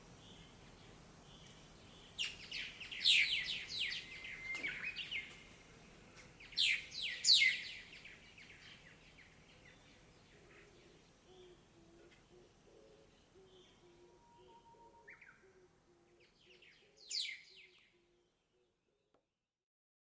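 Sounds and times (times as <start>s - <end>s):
songbirds chirping: 0.0s - 19.2s.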